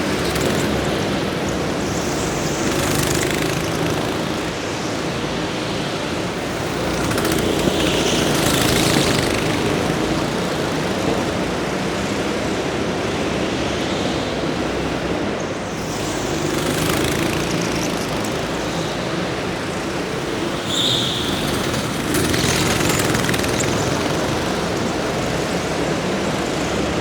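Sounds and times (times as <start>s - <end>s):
racing engine noise: 0.0s - 27.0s
vehicle passing close: 0.0s - 27.0s.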